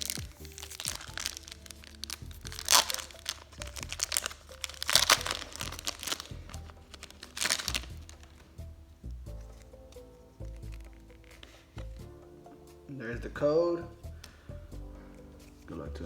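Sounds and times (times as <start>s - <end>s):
foil wrapper crinkling and tearing: 0.0s - 8.5s, 9.3s - 11.9s
background music: 0.0s - 16.0s.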